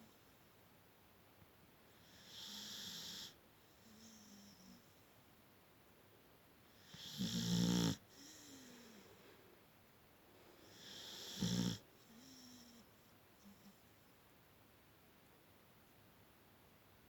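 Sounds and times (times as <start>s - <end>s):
dog snoring loudly: 2.1s - 3.4s, 6.8s - 9.0s, 10.7s - 12.8s.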